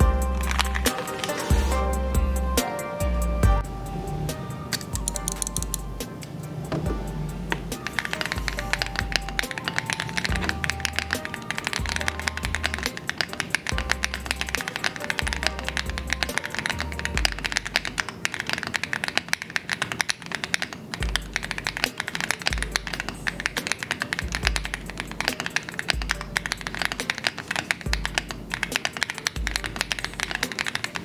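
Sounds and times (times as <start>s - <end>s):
fast typing on mechanical keyboard: 0.0s - 1.8s, 4.8s - 5.9s, 7.7s - 31.0s
background music with deep bass: 0.0s - 13.0s, 13.7s - 17.8s.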